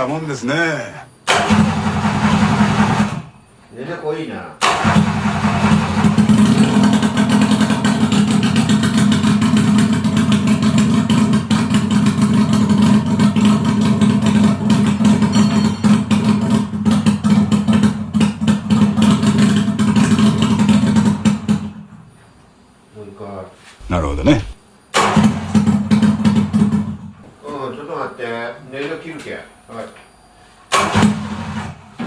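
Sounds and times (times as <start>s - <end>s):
two-stroke engine idling: 5.2s - 21.5s.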